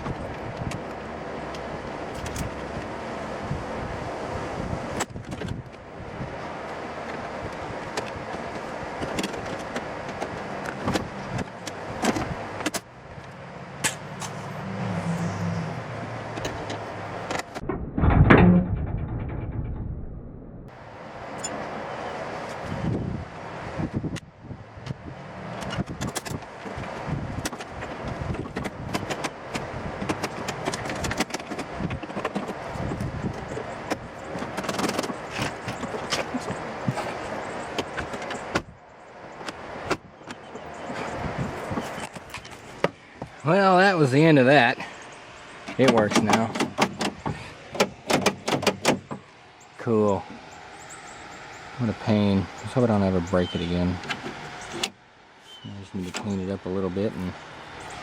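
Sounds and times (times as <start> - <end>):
steady rushing noise: 0.0 - 32.0
heavy thump: 17.6 - 20.7
metal and plastic parts knocking: 45.7 - 49.2.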